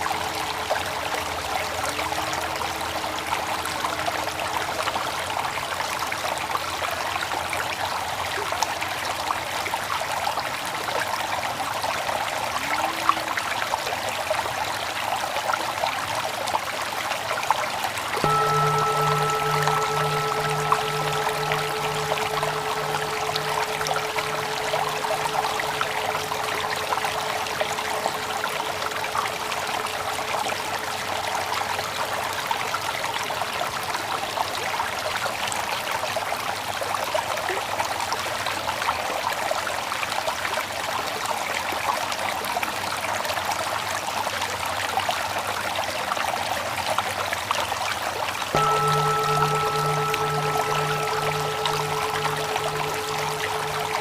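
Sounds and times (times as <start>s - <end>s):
trickling stream: 0.0s - 34.3s, 46.7s - 54.0s
meditation bell hum: 18.2s - 32.6s, 48.6s - 54.0s.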